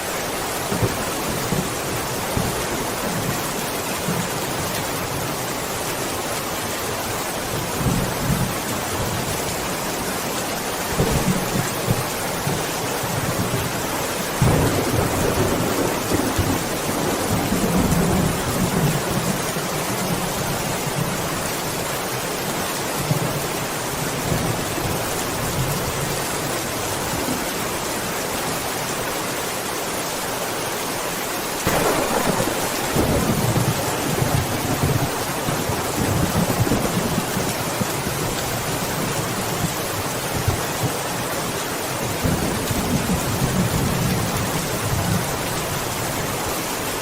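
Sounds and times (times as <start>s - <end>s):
steady rain: 0.0s - 47.0s
rolling thunder: 14.4s - 19.2s, 31.6s - 38.2s.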